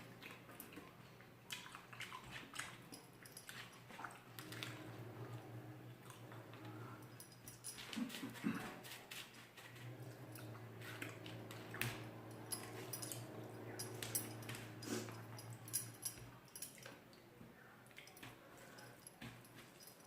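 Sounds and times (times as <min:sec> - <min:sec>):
chewing and eating mouth sounds: 0:00.0 - 0:04.3
steady low hum: 0:09.8 - 0:16.7.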